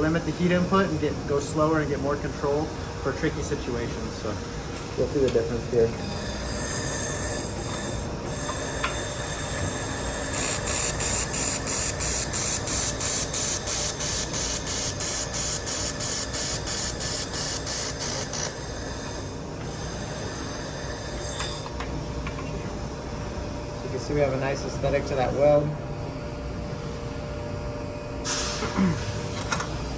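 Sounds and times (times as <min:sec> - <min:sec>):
laser welder hissing pulses: 0:06.0 - 0:21.6.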